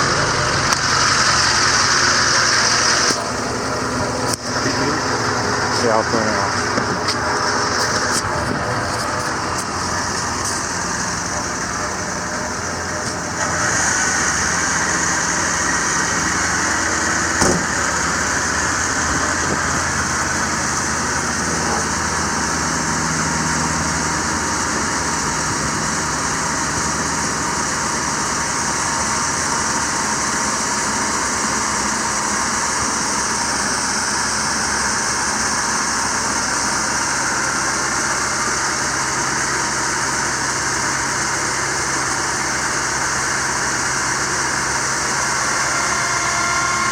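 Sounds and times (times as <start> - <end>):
diesel truck engine idling: 0.0 - 46.9
sharp click: 17.4 - 17.9.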